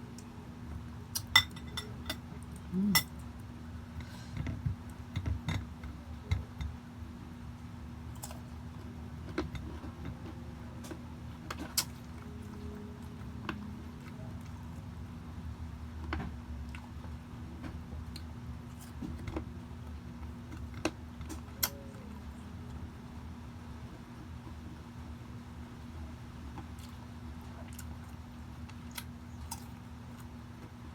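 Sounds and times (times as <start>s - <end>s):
steady low hum: 0.0s - 30.9s
light eating clicks and taps: 0.1s - 6.8s, 7.6s - 14.8s, 16.0s - 21.8s, 26.5s - 30.8s.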